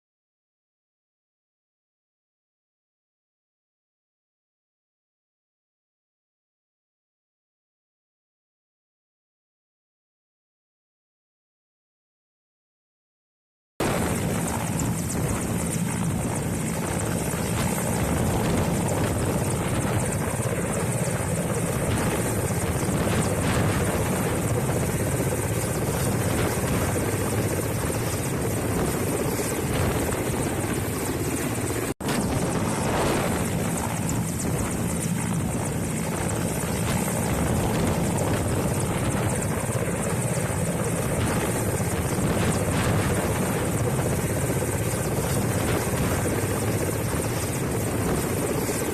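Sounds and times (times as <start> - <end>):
helicopter rotor and engine drone: 13.8 - 48.9.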